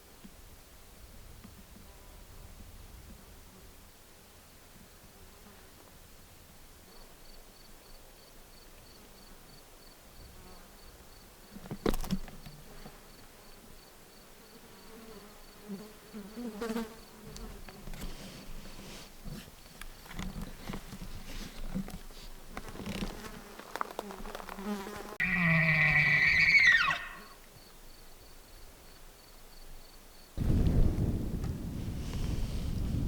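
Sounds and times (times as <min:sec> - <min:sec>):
fly or bee buzzing: 0:12.5 - 0:27.4
knocks and rustles: 0:17.3 - 0:25.1.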